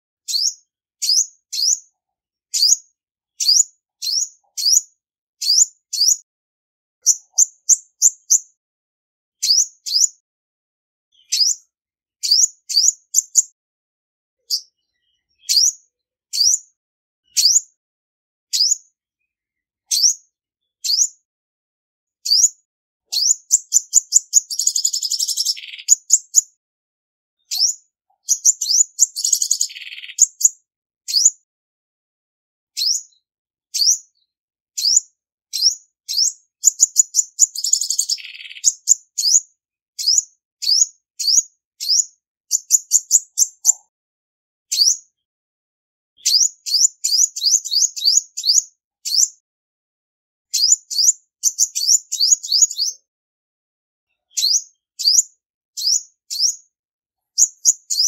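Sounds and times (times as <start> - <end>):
sunbird high chip calls: 0.3 - 1.9, 2.5 - 2.8, 3.4 - 6.2, 7.0 - 8.4, 9.4 - 10.2, 11.1 - 11.6, 12.2 - 13.5, 14.4 - 16.6, 18.5 - 18.8, 19.9 - 20.2, 22.2 - 26.5, 27.4 - 31.3, 32.8 - 33.1, 34.8 - 39.4, 40.0 - 43.9, 44.7 - 45.0, 46.2 - 49.3, 50.5 - 53.1, 54.3 - 56.6, 57.4 - 58.0.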